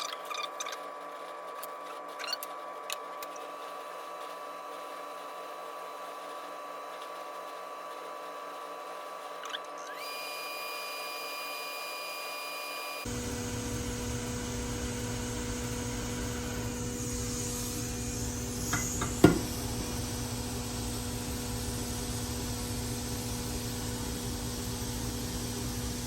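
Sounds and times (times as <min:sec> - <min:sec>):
electronic equipment whine: 0:09.3 - 0:26.0
steady electrical hum: 0:13.0 - 0:26.0.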